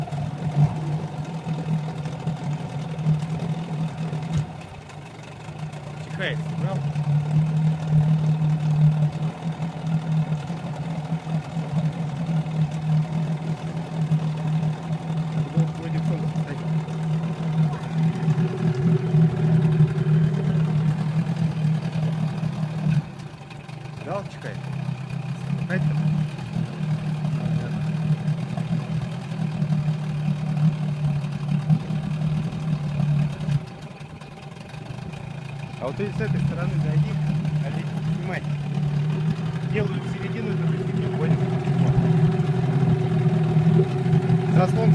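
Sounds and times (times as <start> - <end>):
small engine idling unevenly: 0.0 - 44.9.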